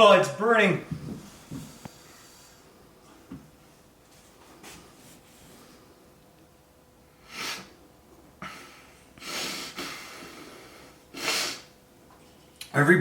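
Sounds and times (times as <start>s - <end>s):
man breathing hard: 8.4s - 11.7s.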